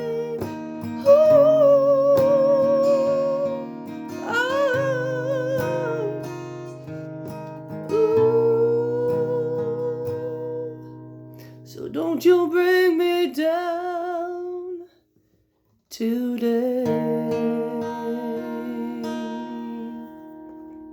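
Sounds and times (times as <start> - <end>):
strummed acoustic guitar: 0.0 - 14.9, 15.6 - 20.9
woman singing wordless notes: 7.9 - 10.9.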